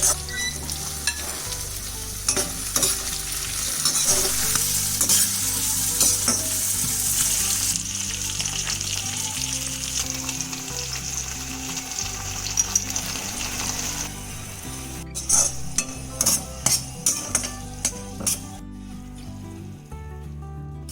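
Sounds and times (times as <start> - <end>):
food sizzling in hot oil: 0.0 - 19.3.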